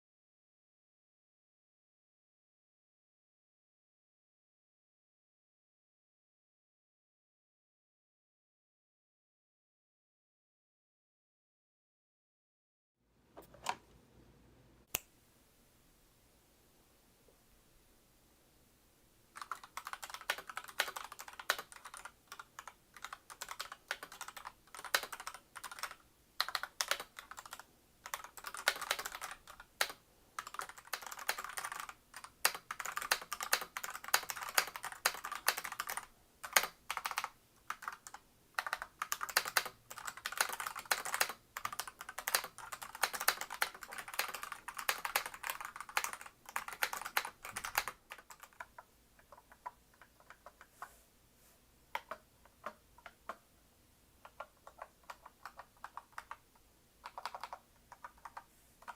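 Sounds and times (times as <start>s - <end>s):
mechanical keyboard typing: 19.4s - 50.7s, 51.9s - 53.4s, 54.2s - 56.4s, 57.0s - 58.9s.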